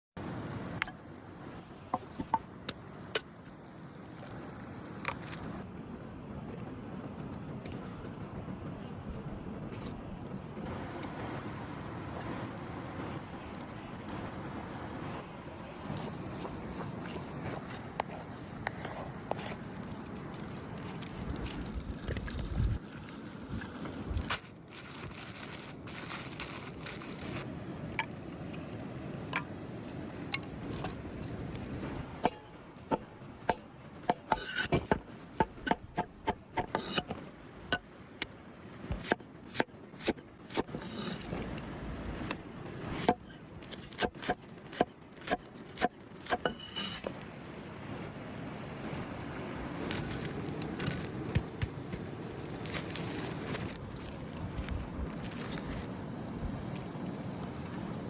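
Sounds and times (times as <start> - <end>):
cooking utensils scraping: 34.0 - 37.2, 46.3 - 47.2.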